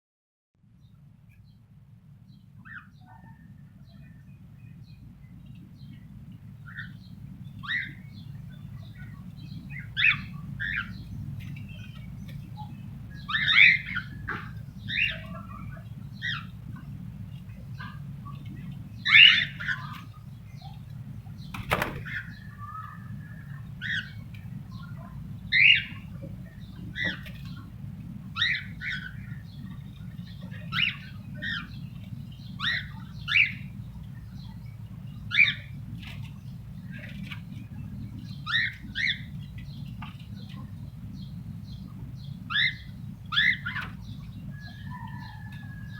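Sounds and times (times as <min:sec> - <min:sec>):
cockatiels chirping and calling: 0:12.6 - 0:16.8, 0:17.8 - 0:20.8, 0:28.4 - 0:29.4, 0:30.4 - 0:31.8, 0:32.5 - 0:33.7, 0:35.3 - 0:35.7, 0:38.4 - 0:39.8, 0:42.5 - 0:45.7.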